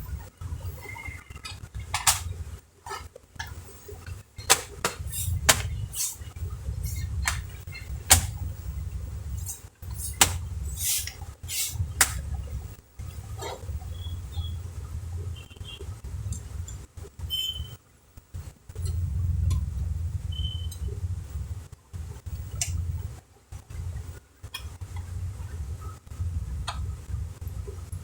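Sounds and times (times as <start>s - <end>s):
steady low hum: 0.0s - 17.0s, 18.3s - 28.0s
plastic case parts clicking: 1.9s - 2.3s
short scrapes: 4.5s - 6.3s, 9.4s - 12.2s.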